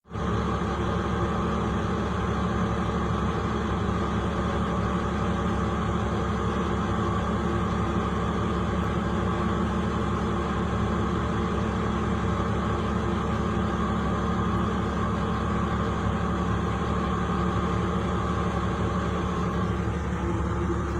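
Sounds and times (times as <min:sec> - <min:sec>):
diesel engine droning: 0:00.0 - 0:20.9.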